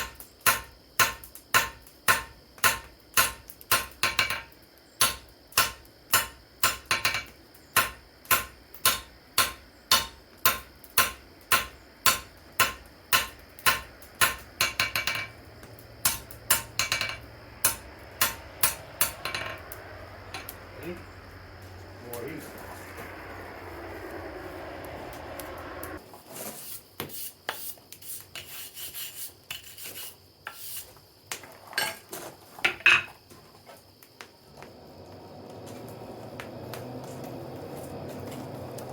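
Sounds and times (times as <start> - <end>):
hammer striking steel on anvil: 0.5 - 15.4, 16.0 - 19.7.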